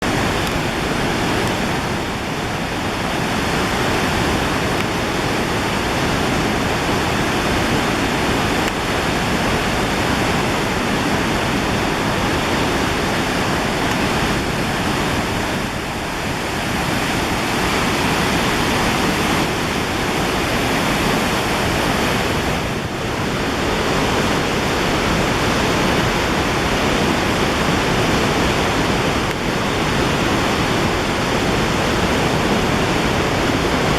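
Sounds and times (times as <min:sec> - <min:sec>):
waterfall roaring: 0:00.0 - 0:33.9.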